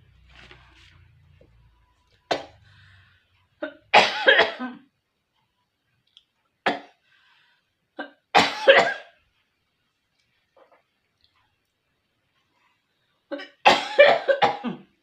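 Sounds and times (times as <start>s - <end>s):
person coughing: 3.6s - 4.8s, 13.3s - 14.9s.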